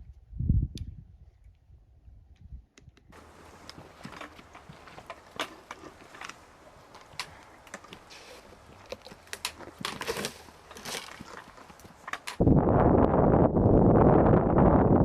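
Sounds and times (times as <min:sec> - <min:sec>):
faint background noise: 0:03.1 - 0:12.4.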